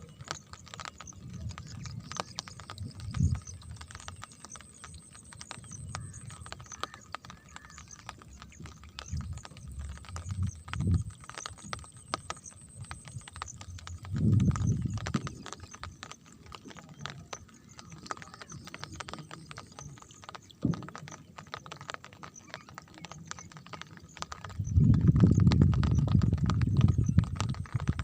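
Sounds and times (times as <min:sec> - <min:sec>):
rain on a hard surface: 0:00.0 - 0:28.0
low rumble: 0:24.6 - 0:28.0.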